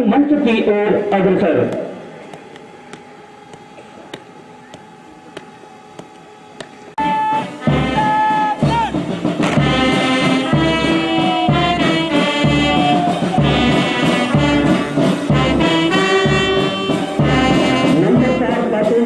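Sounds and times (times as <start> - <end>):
brass band music: 7.0 - 19.0.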